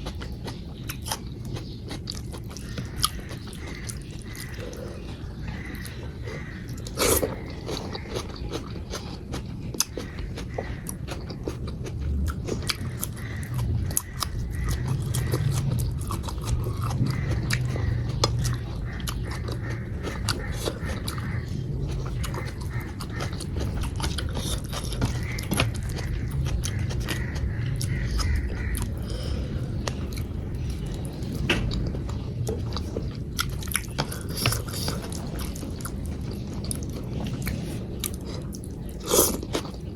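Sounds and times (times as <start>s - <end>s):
chewing and biting food: 0.0s - 39.9s.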